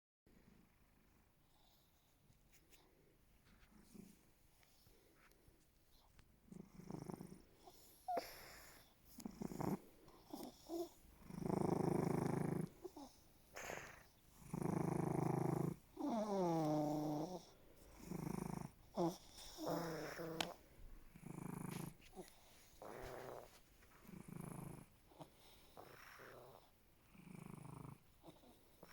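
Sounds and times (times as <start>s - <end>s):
cat purring and snoring: 3.6s - 4.2s, 6.4s - 28.9s.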